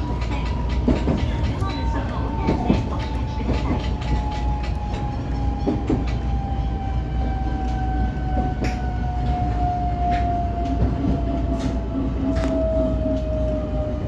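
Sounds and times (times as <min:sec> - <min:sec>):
track clicks: 0:00.0 - 0:01.9, 0:02.5 - 0:06.4
train rumble: 0:00.0 - 0:14.0.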